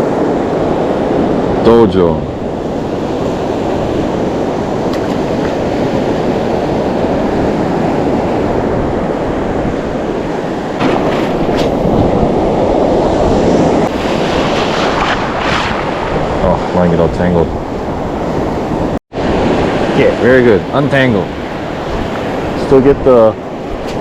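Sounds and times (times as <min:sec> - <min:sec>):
shore surf: 0:00.0 - 0:24.0
wind against microphone: 0:00.0 - 0:24.0.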